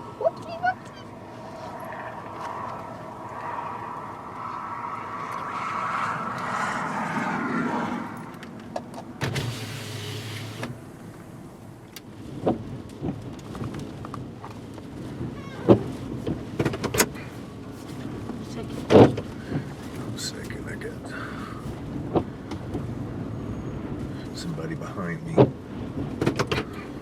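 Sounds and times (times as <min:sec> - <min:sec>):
power window motor: 0:09.2 - 0:10.8.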